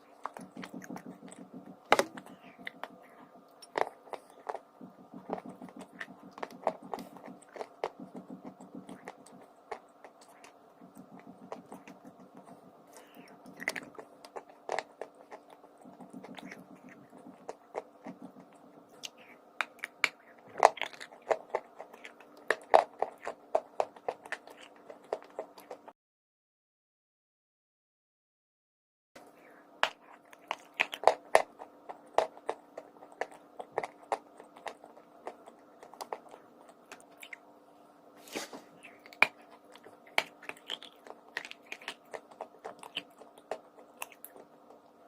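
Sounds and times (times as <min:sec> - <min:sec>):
chewing crunchy chalk: 0:00.0 - 0:25.9, 0:29.8 - 0:37.5, 0:38.2 - 0:45.0.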